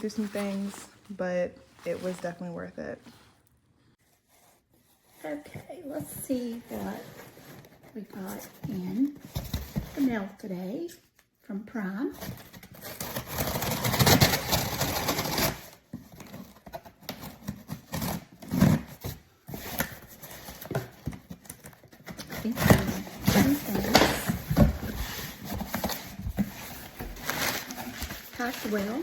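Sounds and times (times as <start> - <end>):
packaging rustling and tearing: 12.2 - 29.0.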